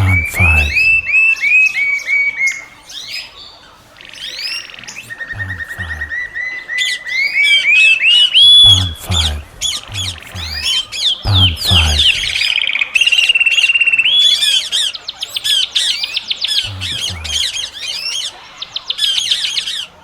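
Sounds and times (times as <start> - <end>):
deep croaking pulses: 0.0 - 1.2, 5.0 - 6.4, 8.2 - 12.5, 16.6 - 17.8
birds chirping and squawking: 0.0 - 20.0.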